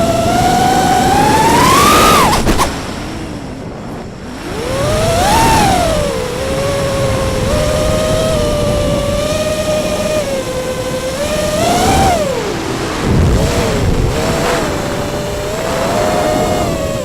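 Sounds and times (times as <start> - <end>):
drone motors whining: 0.0 - 17.0.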